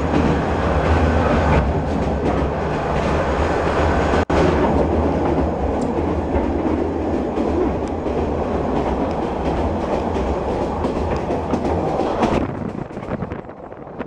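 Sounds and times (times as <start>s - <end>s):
train wheels rumbling on rails: 0.0s - 14.0s.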